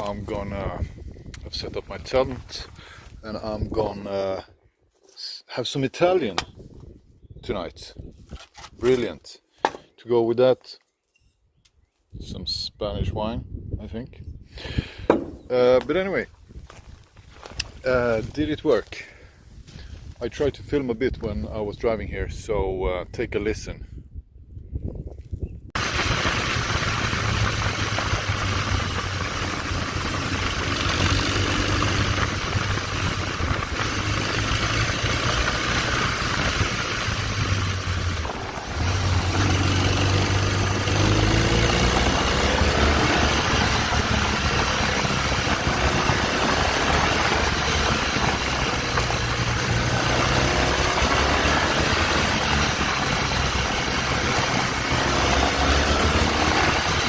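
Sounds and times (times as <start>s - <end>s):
rushing wind noise: 0.0s - 4.0s, 6.4s - 8.4s, 12.2s - 15.4s, 23.7s - 57.0s
motorcycle engine running: 25.8s - 57.0s.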